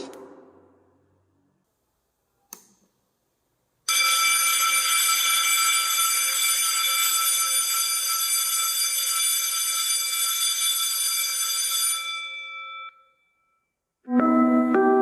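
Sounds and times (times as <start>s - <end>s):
school bell ringing: 3.9s - 13.8s.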